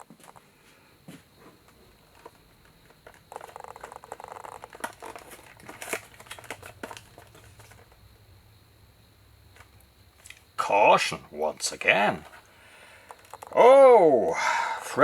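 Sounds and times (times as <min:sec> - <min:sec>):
wrapping crinkling: 0:02.0 - 0:08.0, 0:12.2 - 0:13.6.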